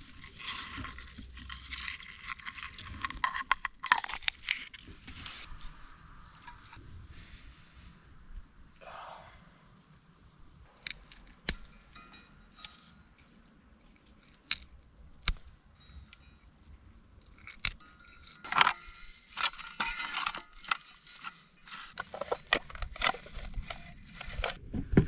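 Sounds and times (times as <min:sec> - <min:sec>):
camp gear rustling and clattering: 0:00.0 - 0:07.0, 0:10.7 - 0:24.6
sharp knocks and clinks: 0:11.0 - 0:13.4, 0:15.3 - 0:24.6.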